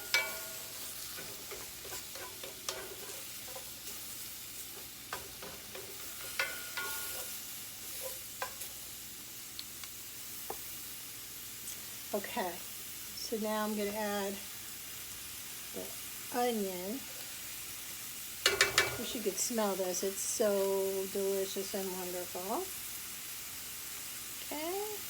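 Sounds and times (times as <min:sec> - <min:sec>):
mushrooms sizzling in oil: 0:00.0 - 0:25.0
utensil clicking against pan: 0:00.1 - 0:03.8, 0:04.8 - 0:07.4, 0:18.4 - 0:19.0.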